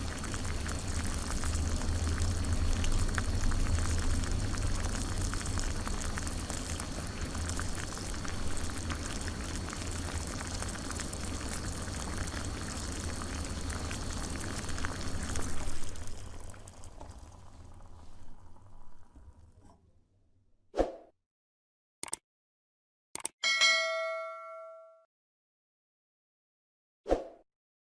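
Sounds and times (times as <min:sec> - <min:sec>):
water boiling in coffee pot: 0:00.0 - 0:19.8.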